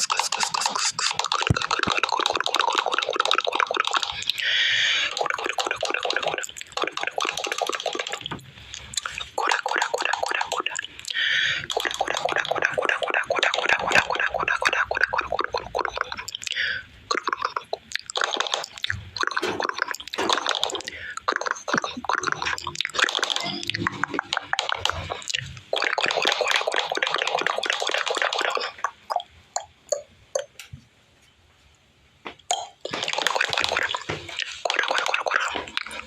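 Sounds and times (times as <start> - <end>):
wet gurgling and squelching: 0.0 - 29.7, 32.5 - 36.0
rapid little clicks: 16.0 - 29.2.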